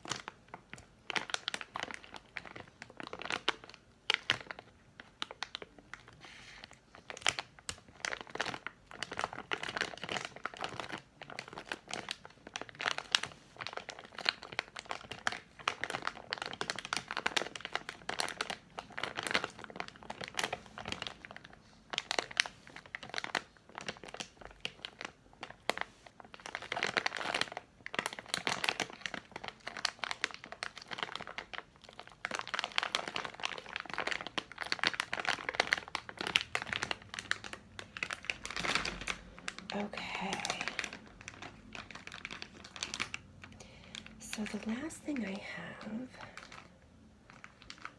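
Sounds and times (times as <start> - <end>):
candy packaging crinkling: 0.0 - 47.9.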